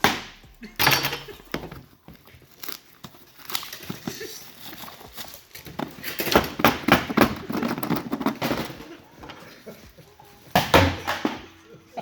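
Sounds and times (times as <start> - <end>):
wrappers crinkling and tearing: 1.8 - 6.3.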